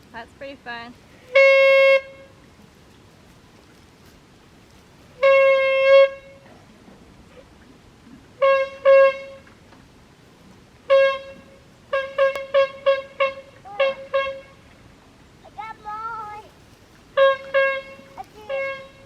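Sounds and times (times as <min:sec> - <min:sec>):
horn honking: 0:01.2 - 0:02.5, 0:05.2 - 0:06.6, 0:08.4 - 0:09.5, 0:10.8 - 0:14.9, 0:17.1 - 0:19.0.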